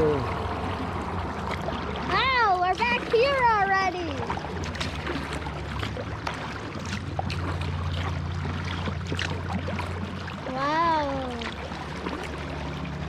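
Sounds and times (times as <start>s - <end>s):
low steady rumble: 0.0s - 13.0s
water dripping off paddle: 0.2s - 10.4s.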